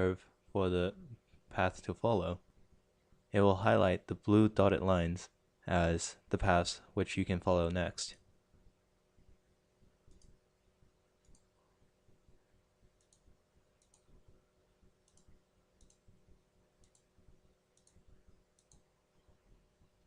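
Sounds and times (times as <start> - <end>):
low steady hum: 0.0 - 20.0
computer mouse clicks: 10.1 - 10.4, 11.2 - 11.5, 13.0 - 14.2, 15.0 - 16.1, 16.8 - 17.1, 17.7 - 18.9.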